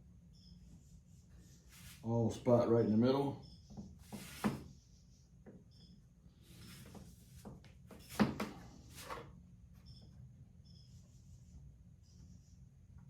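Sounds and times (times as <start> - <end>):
short scrapes on workbench: 4.0 - 4.7.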